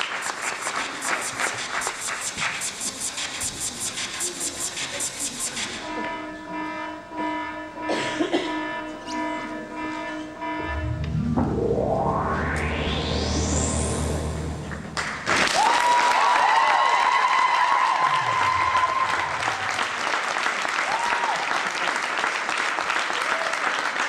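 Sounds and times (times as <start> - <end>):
audience applauding: 0.0 - 2.7, 15.0 - 24.0
synthesizer music: 10.6 - 15.6
crowd cheering: 15.0 - 21.9.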